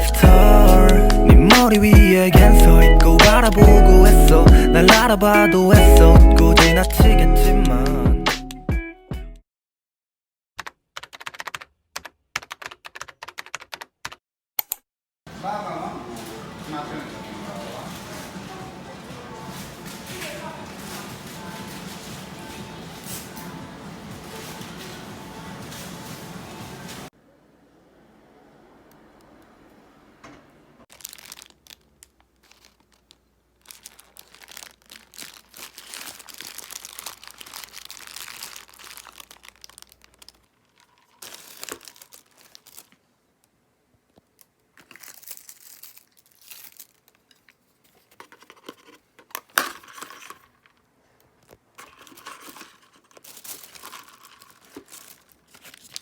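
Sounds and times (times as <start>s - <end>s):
packaging crinkling and tearing: 30.9s - 43.1s, 44.2s - 50.7s, 51.4s - 56.0s.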